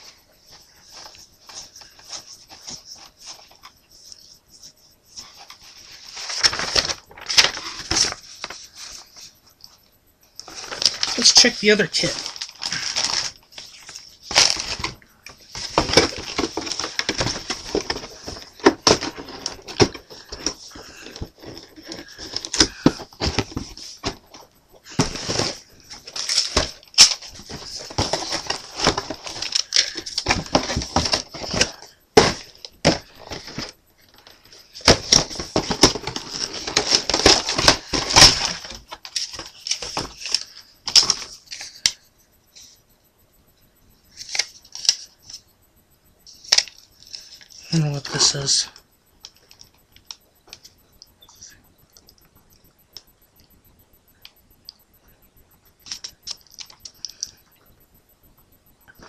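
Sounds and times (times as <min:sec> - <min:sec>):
plastic and cardboard rustling: 0:00.0 - 0:09.4, 0:10.4 - 0:42.0, 0:44.1 - 0:45.4, 0:46.3 - 0:49.7, 0:55.8 - 0:57.4.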